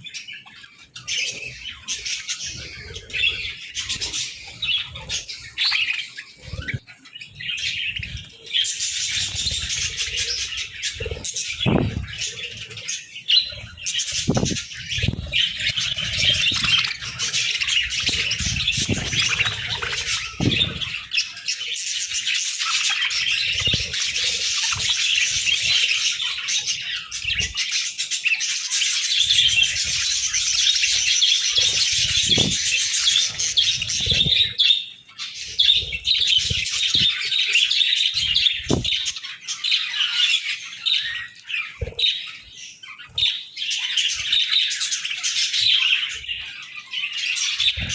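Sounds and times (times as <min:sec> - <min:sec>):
budgerigars chattering and chirping: 0:00.0 - 0:47.9
low thumps: 0:11.6 - 0:12.1.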